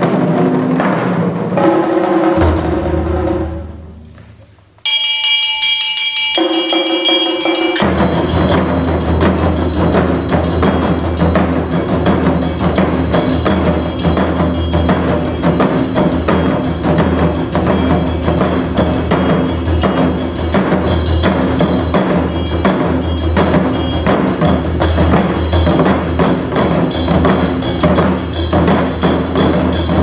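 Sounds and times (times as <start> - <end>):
taiko drums: 0.0 - 30.0
sustained ringing tones: 4.9 - 24.6.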